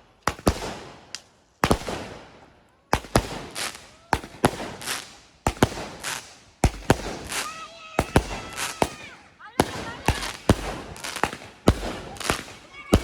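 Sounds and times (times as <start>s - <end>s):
firecrackers banging with echo: 0.0s - 13.0s.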